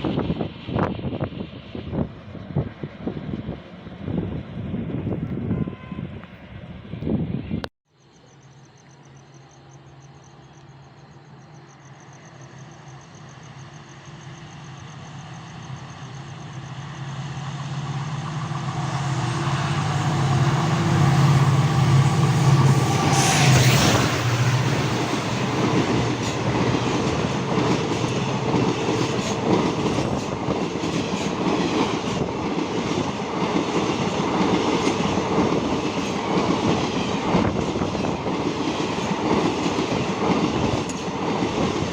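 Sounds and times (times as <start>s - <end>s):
locomotive hum: 9.4s - 41.9s
train wheels clattering over rail joints: 24.9s - 41.9s.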